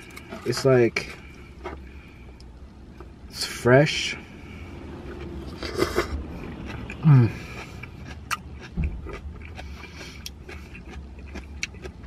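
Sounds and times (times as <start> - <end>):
chewing with small clicks: 5.0 - 12.0.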